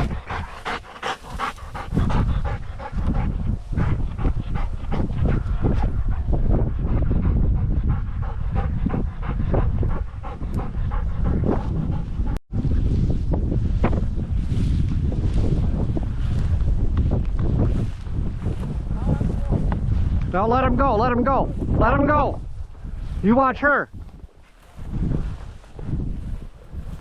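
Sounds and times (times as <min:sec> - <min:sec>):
dog panting: 0:00.0 - 0:12.4
wind rumbling on microphone: 0:00.0 - 0:27.0.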